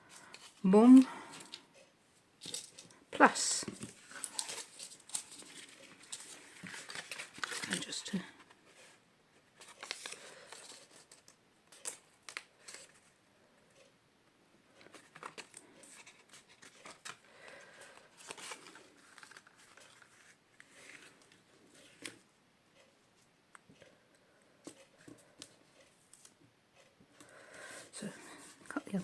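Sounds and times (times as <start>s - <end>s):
paper rustling: 3.6s - 13.1s, 14.8s - 22.2s.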